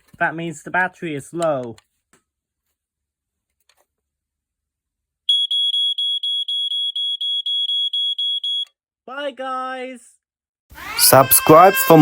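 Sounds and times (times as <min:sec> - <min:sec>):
smoke alarm beeping: 0:05.3 - 0:08.8.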